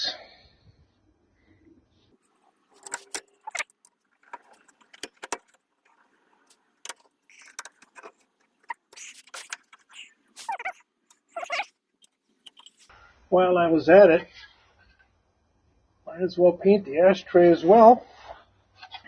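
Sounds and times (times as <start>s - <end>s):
metallic clicks and rattles: 2.2s - 12.9s.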